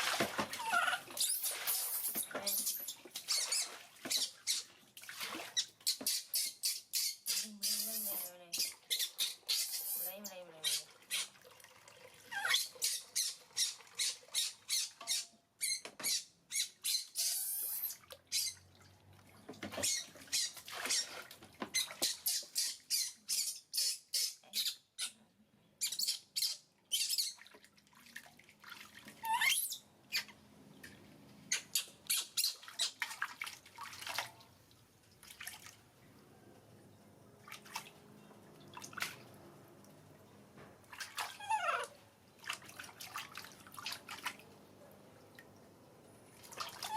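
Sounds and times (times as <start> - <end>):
water splashing and dripping: 0.0 - 16.1, 17.6 - 23.4, 26.8 - 41.4, 42.2 - 44.6, 46.3 - 46.9
baby monkey squeaking: 0.6 - 4.6, 5.6 - 11.3, 12.3 - 18.6, 21.8 - 25.2, 25.8 - 27.4, 29.3 - 30.3, 31.5 - 33.0.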